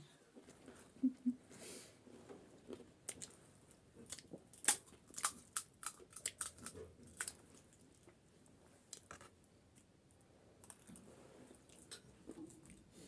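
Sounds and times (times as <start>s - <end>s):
crunchy chewing: 2.6s - 9.9s.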